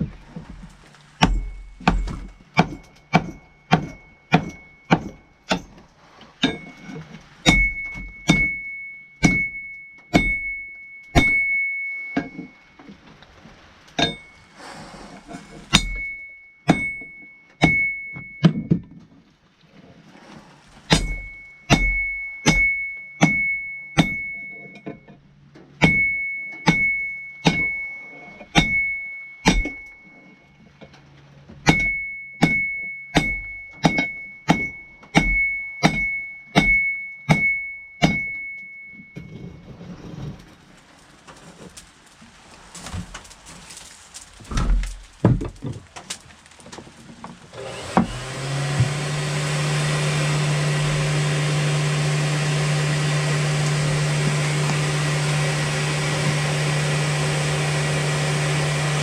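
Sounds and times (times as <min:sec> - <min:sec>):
anvil ringing: 0:01.2 - 0:05.8, 0:06.4 - 0:12.8, 0:14.0 - 0:14.5, 0:15.7 - 0:18.6, 0:20.9 - 0:25.1, 0:25.8 - 0:30.4, 0:31.6 - 0:39.2
hammer striking steel on anvil: 0:01.2 - 0:05.8, 0:06.4 - 0:12.5, 0:14.0 - 0:14.3, 0:15.7 - 0:18.6, 0:20.9 - 0:25.0, 0:25.8 - 0:30.0, 0:31.6 - 0:38.9.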